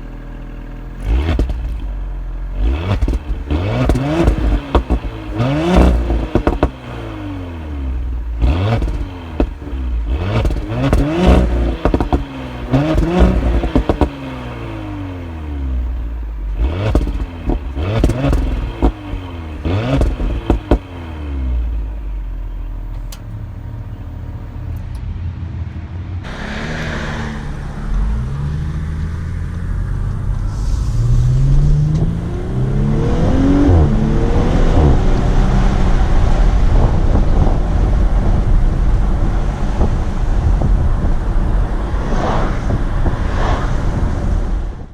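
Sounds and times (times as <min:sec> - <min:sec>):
exhaust pops and crackles: 0:00.0 - 0:14.9, 0:16.4 - 0:23.4, 0:34.7 - 0:44.8
car engine revving: 0:00.0 - 0:44.9.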